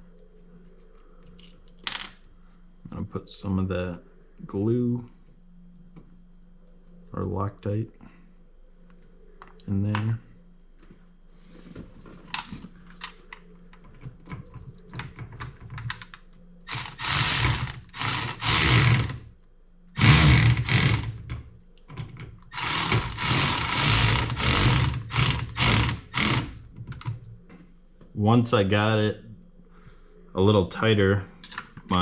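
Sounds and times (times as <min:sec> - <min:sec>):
electric ratchet running: 0:16.7 - 0:19.2, 0:20.0 - 0:21.2, 0:22.5 - 0:26.6.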